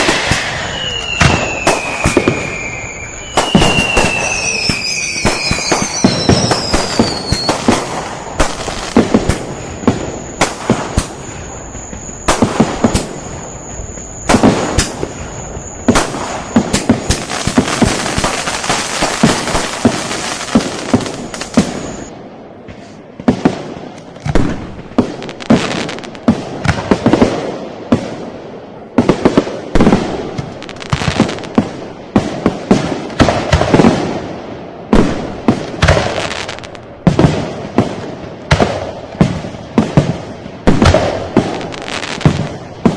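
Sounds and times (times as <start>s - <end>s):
falling firework whistle: 0.0s - 22.2s, 24.3s - 27.4s, 29.0s - 31.8s, 34.9s - 37.9s, 38.5s - 42.9s
firecracker bangs: 0.0s - 28.4s, 34.9s - 42.9s
fireworks crackling: 0.0s - 42.9s
thin steady high tone: 0.5s - 7.3s, 9.4s - 18.6s.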